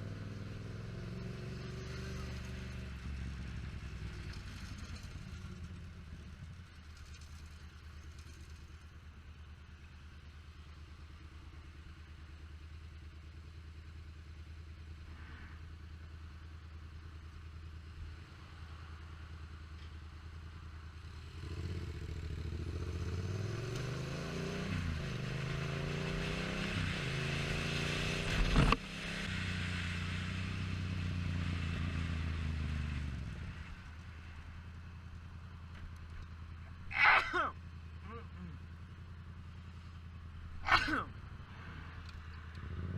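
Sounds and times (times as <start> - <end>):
motorcycle engine revving: 0.0 - 8.8, 21.0 - 42.9.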